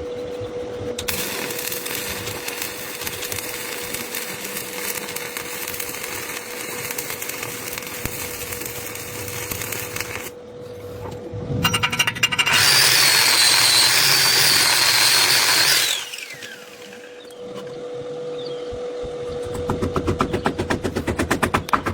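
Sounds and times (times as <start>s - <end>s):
welding arc crackling hiss: 1.0s - 10.4s, 12.6s - 17.2s
angle grinder running: 11.9s - 17.8s.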